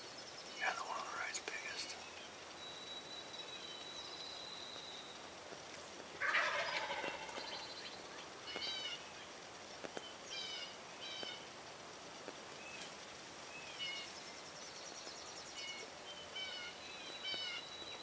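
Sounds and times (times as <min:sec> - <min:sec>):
wild turkey gobbling: 0:06.2 - 0:07.6.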